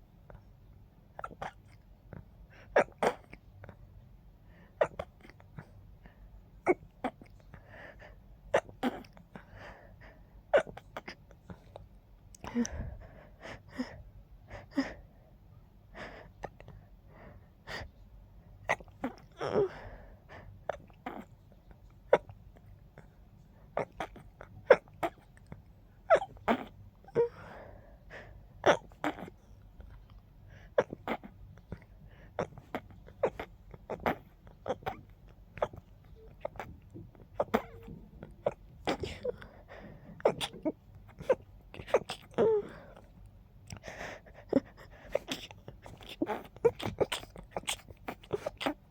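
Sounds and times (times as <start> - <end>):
stifled sneezes: 2.5 - 3.4, 30.5 - 43.1, 43.7 - 48.9
breathy sounds: 26.2 - 48.9.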